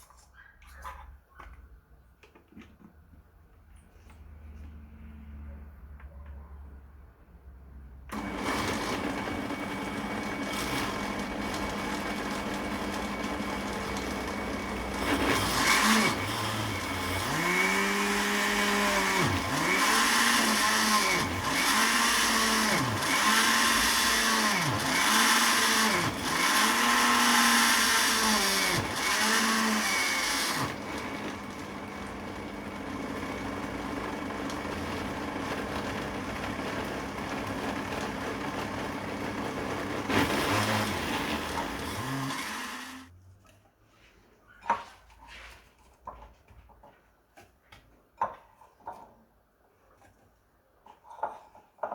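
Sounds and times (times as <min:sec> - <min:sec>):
blender motor humming: 0:08.1 - 0:43.1.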